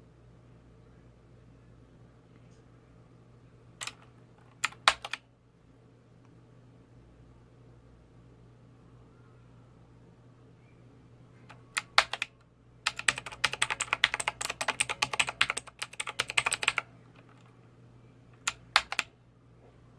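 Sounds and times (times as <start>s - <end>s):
keyboard keys clicking: 3.8s - 5.2s, 11.5s - 12.3s, 12.9s - 17.5s, 18.4s - 19.1s.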